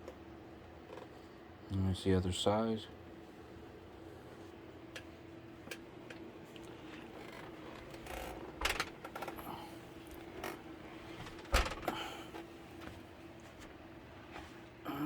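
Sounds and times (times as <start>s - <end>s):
faint steady hum: 0.0s - 15.0s
computer case knocking and rattling: 7.8s - 9.4s, 11.2s - 12.0s.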